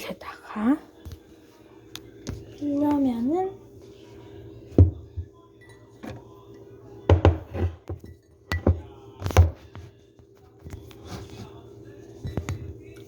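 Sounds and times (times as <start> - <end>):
bowl and utensils knocking: 4.8 - 6.3, 7.1 - 9.6.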